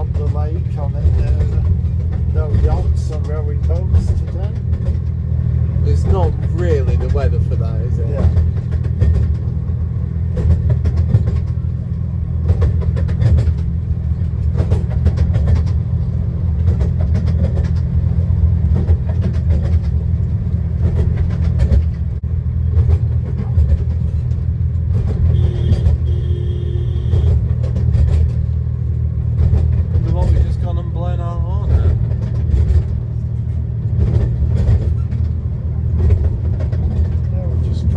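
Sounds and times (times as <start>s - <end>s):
train rumbling: 0.0s - 37.9s
wheels clicking over rails: 0.0s - 37.9s
short tone: 25.3s - 27.4s.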